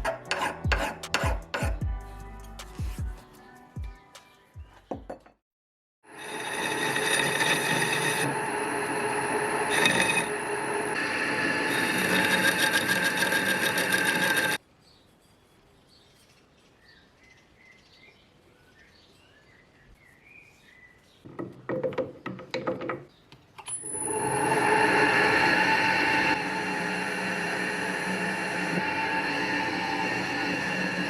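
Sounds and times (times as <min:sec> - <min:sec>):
power tool motor whining: 0:06.2 - 0:14.6, 0:23.7 - 0:31.0.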